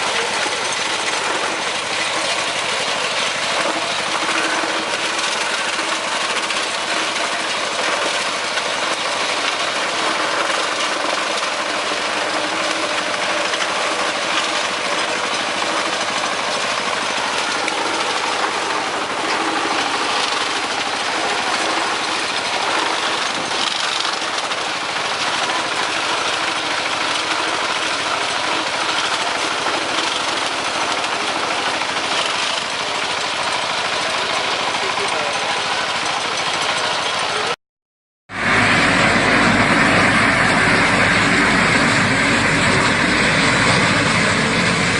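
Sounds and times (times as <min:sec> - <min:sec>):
farm machine engine running: 0:00.0 - 0:37.6, 0:38.3 - 0:44.9.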